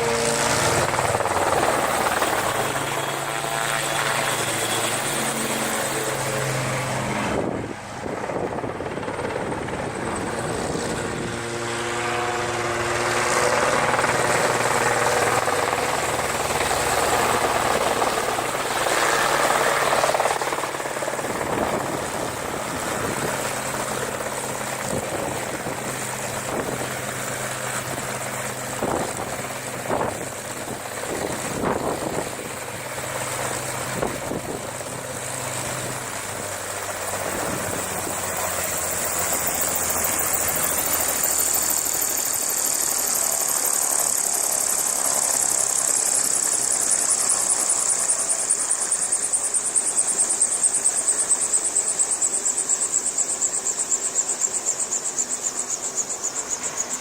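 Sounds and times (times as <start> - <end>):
helicopter in flight: 0.0 - 57.0.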